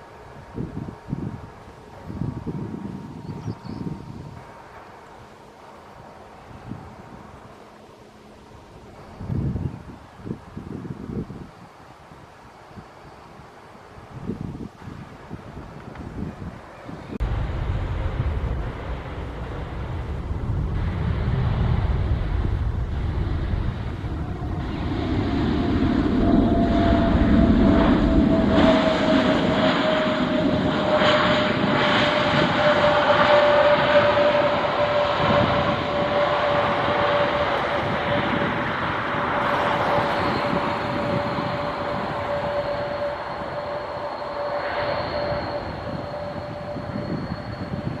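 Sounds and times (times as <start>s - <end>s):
jet airliner passing: 0.0s - 48.0s
whine sliding down in pitch: 17.2s - 48.0s.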